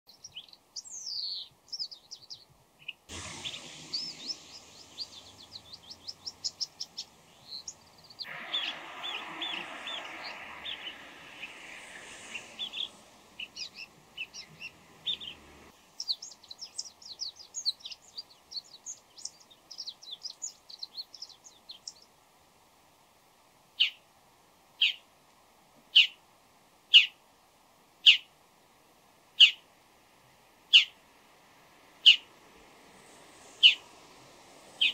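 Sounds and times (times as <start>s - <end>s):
shrike calling with chirps and trills: 0.3s - 22.0s, 28.0s - 28.3s, 29.4s - 29.7s, 30.7s - 31.0s, 32.0s - 32.4s, 33.4s - 33.9s.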